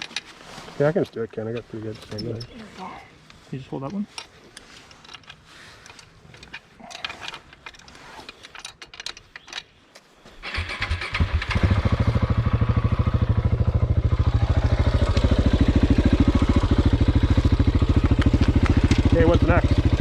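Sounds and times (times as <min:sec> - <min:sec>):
motorcycle engine starting and idling: 0:10.4 - 0:20.0.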